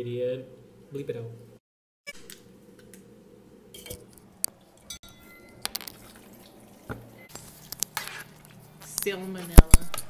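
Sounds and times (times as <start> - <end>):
dishes and utensils clinking: 4.8 - 7.3
liquid dripping: 5.4 - 7.3.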